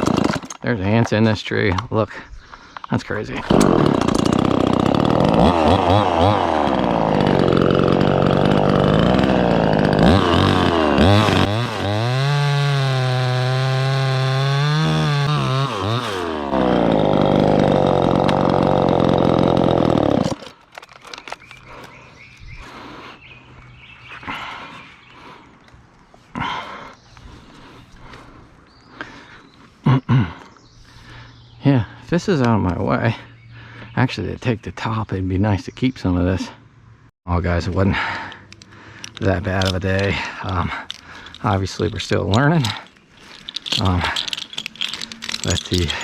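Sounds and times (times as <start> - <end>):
chainsaw cutting wood: 0.0 - 0.6, 3.4 - 22.0, 38.2 - 46.0.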